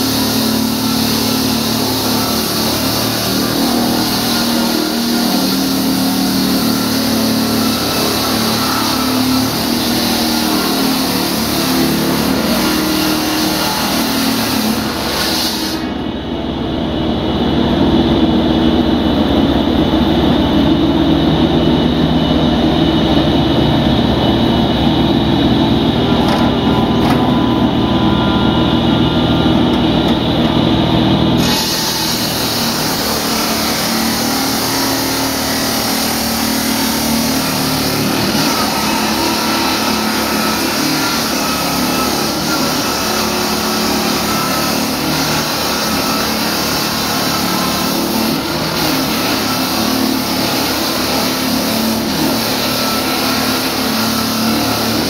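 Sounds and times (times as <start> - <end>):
engine running steadily: 15.9 - 31.5.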